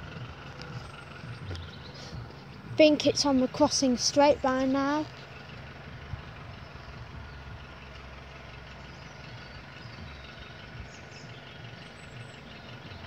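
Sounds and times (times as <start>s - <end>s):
car engine idling: 0.0s - 13.0s.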